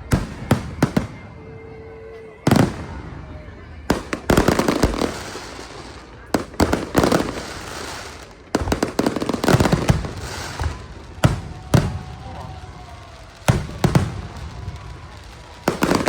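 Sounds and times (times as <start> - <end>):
aerial fireworks bursting: 3.9 - 16.0.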